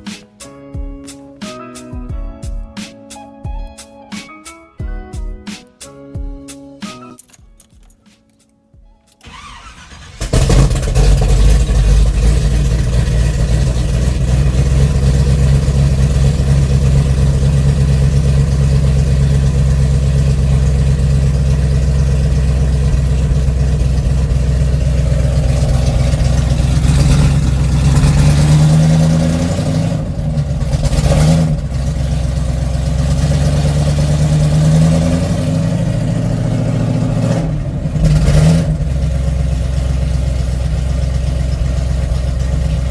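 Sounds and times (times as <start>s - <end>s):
engine cranking and starting: 9.2s - 42.9s
engine running and revving: 9.3s - 42.9s.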